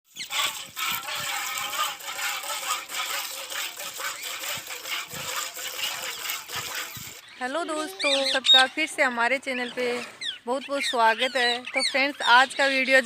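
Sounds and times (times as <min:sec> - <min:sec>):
milk squirting into metal pail: 0:00.1 - 0:07.2.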